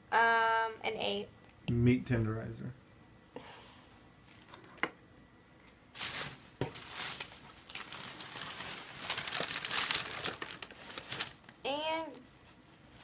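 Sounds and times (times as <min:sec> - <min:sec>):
packing material rustling: 0:06.0 - 0:11.6.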